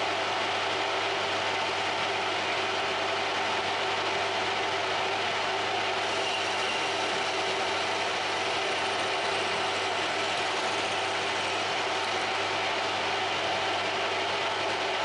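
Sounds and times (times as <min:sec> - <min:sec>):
machine tool whirring: 0:05.9 - 0:15.0.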